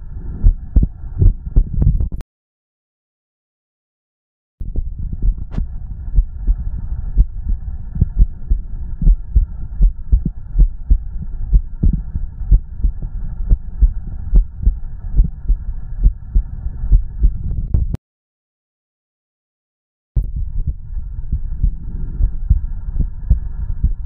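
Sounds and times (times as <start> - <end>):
heartbeat thuds: 0.4 - 2.2, 4.6 - 18.0, 20.2 - 24.0.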